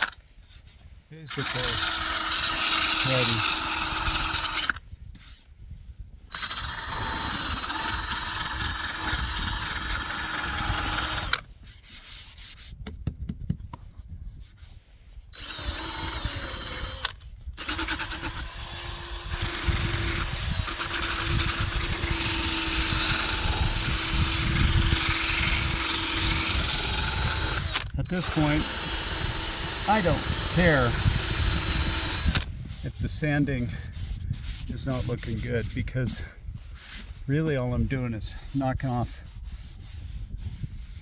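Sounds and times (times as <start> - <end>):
power sander on fiberglass: 1.3 - 4.7, 15.4 - 36.2.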